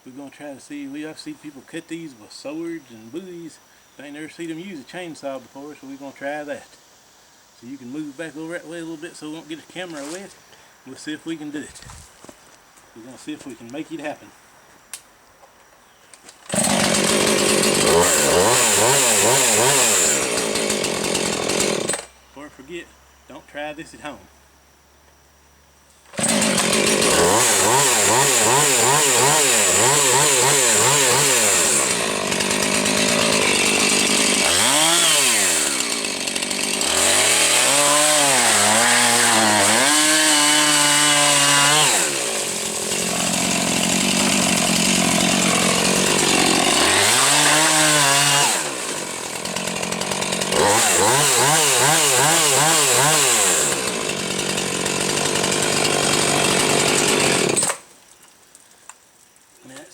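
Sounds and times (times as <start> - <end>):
chainsaw revving: 16.5 - 22.2, 26.1 - 57.9.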